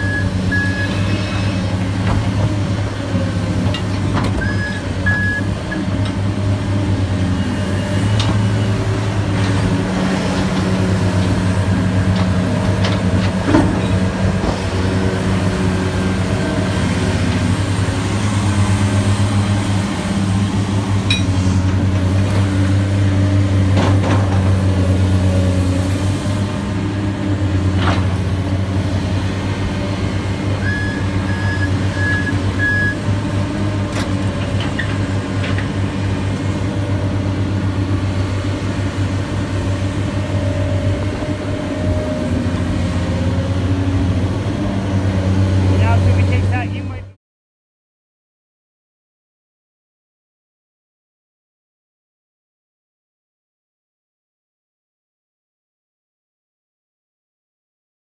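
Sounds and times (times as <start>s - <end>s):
truck reversing beeper: 0.0s - 2.0s, 4.2s - 6.5s, 29.0s - 35.2s
heavy diesel machinery running: 0.0s - 47.2s.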